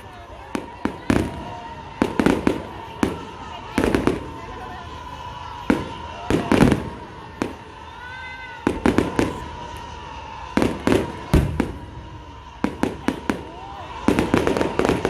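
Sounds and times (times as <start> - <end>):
fireworks exploding: 0.0 - 15.0
rumbling firework tails: 10.4 - 15.0.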